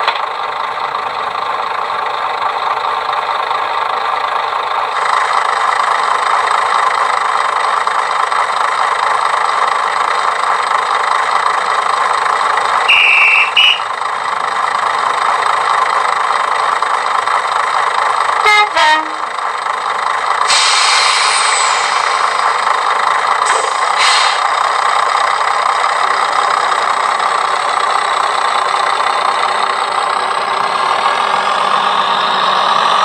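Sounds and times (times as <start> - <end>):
diesel engine through small speaker: 0.0 - 33.0
horn blast: 12.9 - 13.9, 18.4 - 19.3
hiss: 20.4 - 22.6, 23.4 - 24.6.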